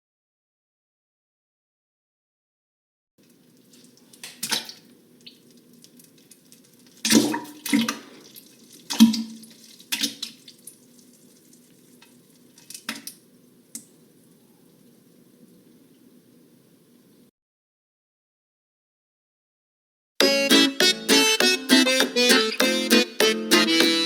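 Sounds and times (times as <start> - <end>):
wet splattering squelches: 3.2 - 13.2
faint steady hum: 3.2 - 17.3.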